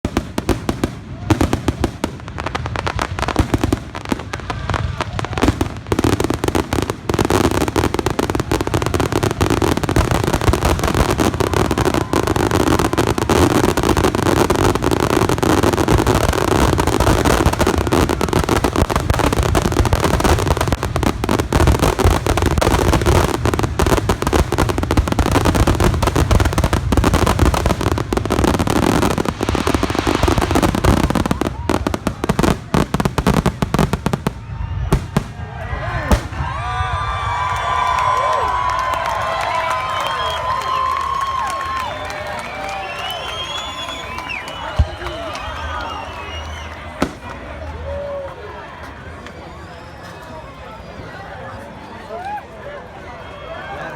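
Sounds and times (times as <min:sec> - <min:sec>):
fireworks bursting and crackling: 0:00.0 - 0:48.0.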